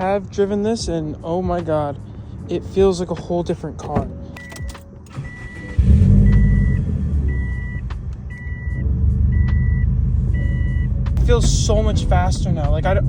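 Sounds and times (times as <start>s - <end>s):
car engine starting and running: 3.8s - 13.0s
car warning chime beeping: 4.0s - 11.6s.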